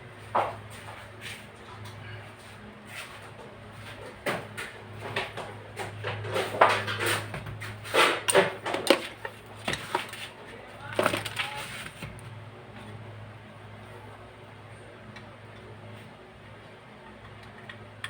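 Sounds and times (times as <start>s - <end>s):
hard objects knocking and clattering: 4.1s - 12.2s.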